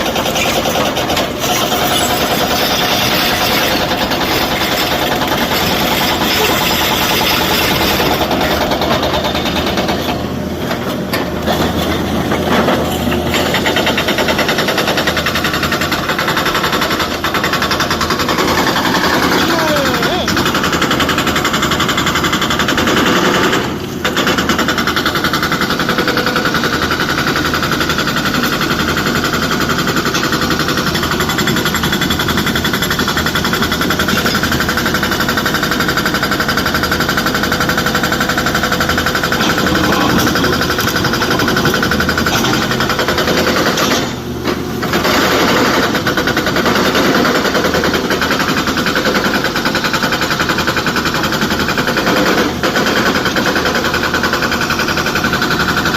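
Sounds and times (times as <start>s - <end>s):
excavator engine running hard: 0.0s - 55.9s
continuous rattling clatter: 20.4s - 55.9s.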